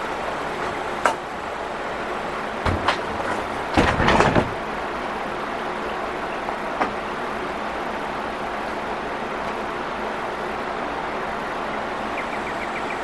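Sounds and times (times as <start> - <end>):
metal truck bed parts clanking: 0.1 - 7.3
knocks: 2.6 - 5.0.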